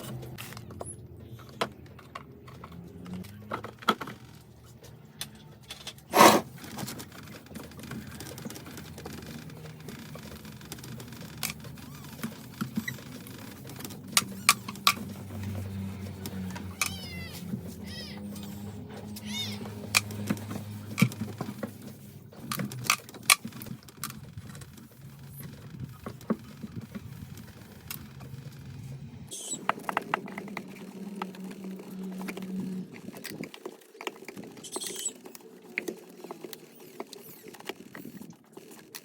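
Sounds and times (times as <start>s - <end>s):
household items clicking: 5.6s - 15.1s.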